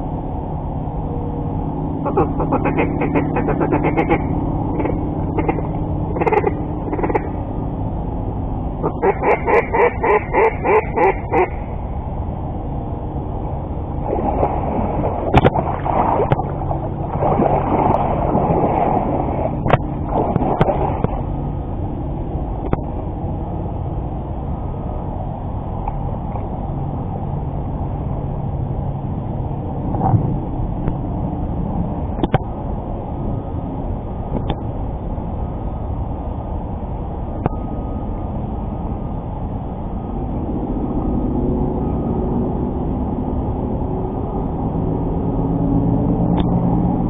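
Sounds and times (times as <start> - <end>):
low hum: 0.0 - 47.0
duck quacking: 2.0 - 7.3, 8.8 - 11.6
water splashing: 14.0 - 21.5.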